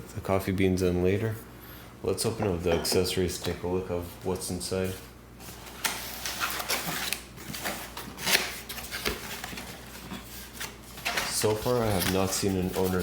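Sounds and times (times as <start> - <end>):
packaging rustling and crinkling: 5.5 - 13.0.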